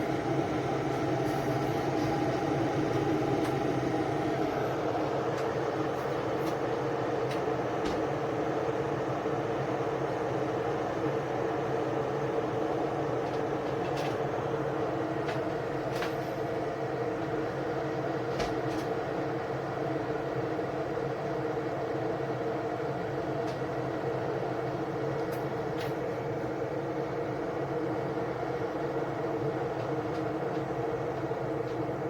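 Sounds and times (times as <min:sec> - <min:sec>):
electric kettle heating water: 0:00.0 - 0:32.0.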